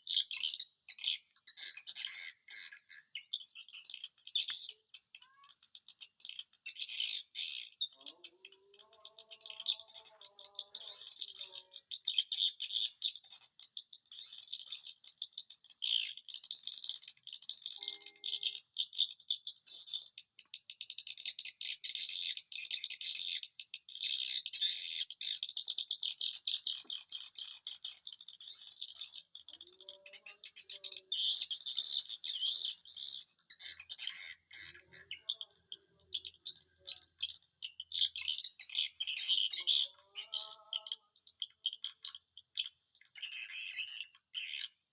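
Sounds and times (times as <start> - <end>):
short low bird calls: 17.8 - 18.6.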